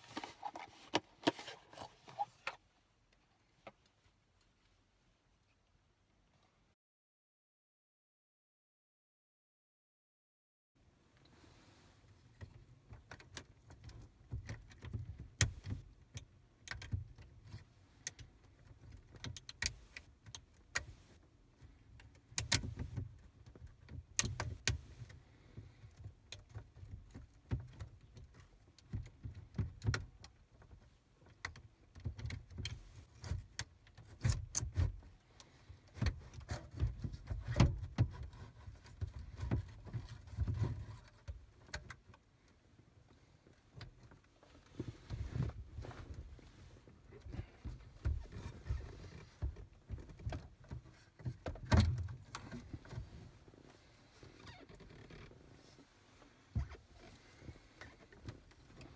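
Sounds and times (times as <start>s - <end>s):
plastic car trim clicks and rattles: 12.4s - 21.0s, 21.6s - 25.2s, 25.9s - 35.1s, 35.8s - 42.3s, 47.2s - 53.2s.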